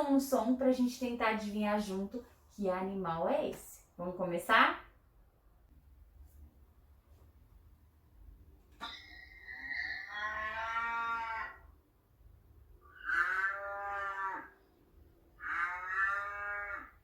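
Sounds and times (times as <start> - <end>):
cow mooing: 9.1 - 11.7, 12.8 - 14.6, 15.4 - 17.0.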